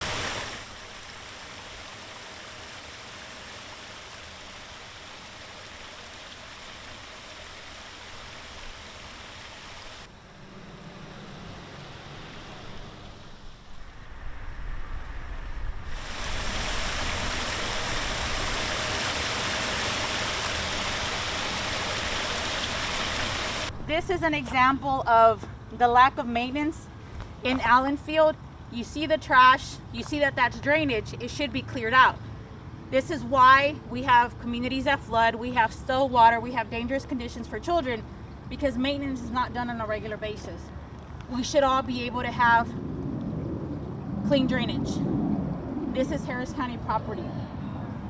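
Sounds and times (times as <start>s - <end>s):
flowing water rushing: 0.0s - 10.1s, 15.9s - 23.8s.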